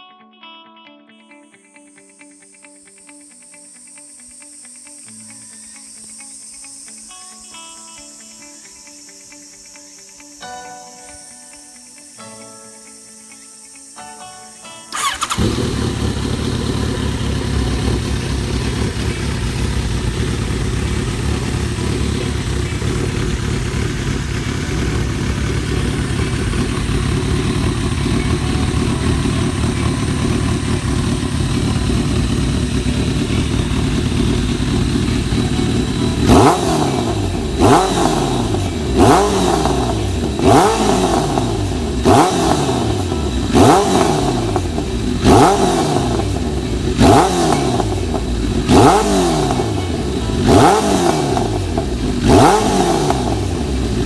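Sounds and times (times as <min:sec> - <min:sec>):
motorcycle engine idling: 0:14.9 - 0:54.0
motorcycle throttle blips: 0:14.9 - 0:54.0.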